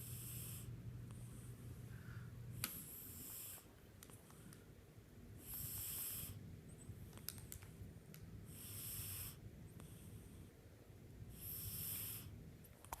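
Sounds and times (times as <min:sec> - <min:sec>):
cat snoring: 0:00.0 - 0:01.5, 0:02.7 - 0:03.7, 0:05.4 - 0:06.4, 0:08.4 - 0:10.5, 0:11.3 - 0:12.4.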